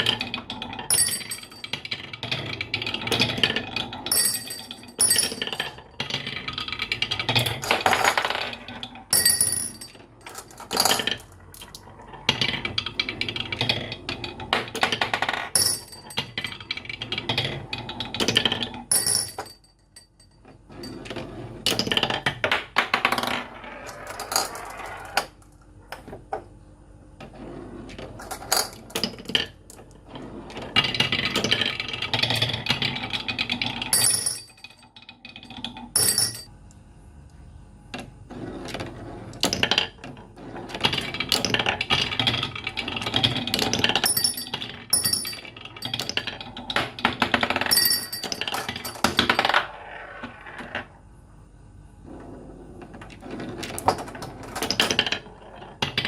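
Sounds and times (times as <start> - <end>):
marbles clattering down track: 0.0 - 19.5, 40.7 - 50.8
high ringing clinks: 0.9 - 1.7, 4.1 - 5.4, 36.0 - 36.5.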